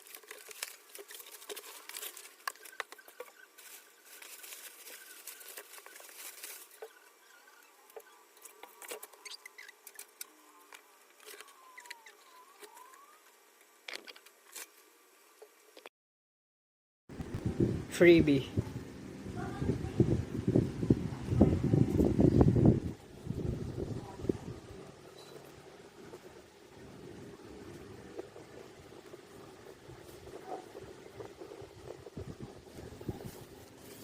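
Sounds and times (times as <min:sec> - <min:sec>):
soft rustle: 0:00.0 - 0:13.1, 0:27.6 - 0:34.0.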